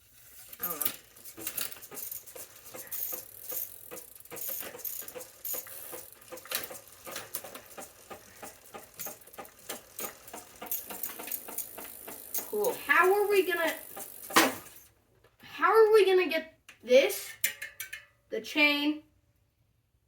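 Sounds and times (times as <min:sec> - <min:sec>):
small metal parts clicking and rattling: 0:00.0 - 0:14.9.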